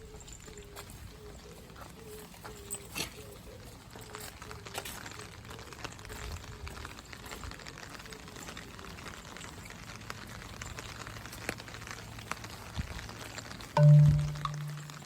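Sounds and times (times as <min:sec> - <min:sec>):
raindrops ticking: 0:03.6 - 0:15.0
steady rain hissing: 0:04.5 - 0:15.0.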